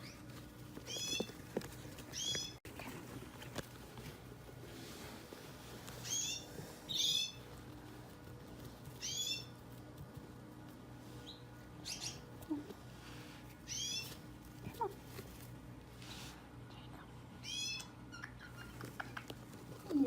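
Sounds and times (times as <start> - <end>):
bird chicks cheeping: 0.0 - 1.4, 2.1 - 2.6, 6.0 - 7.4, 9.0 - 9.6, 11.2 - 12.3, 13.6 - 14.2
faint steady hum: 0.0 - 20.0.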